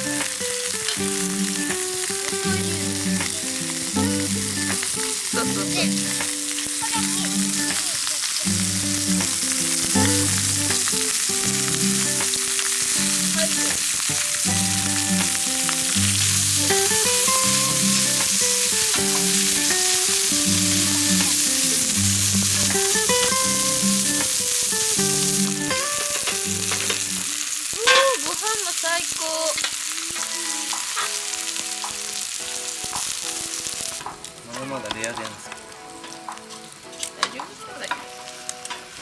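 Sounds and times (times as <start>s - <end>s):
slow background music: 0.0s - 27.8s, 29.7s - 39.0s
steak sizzling on a griddle: 0.0s - 39.0s.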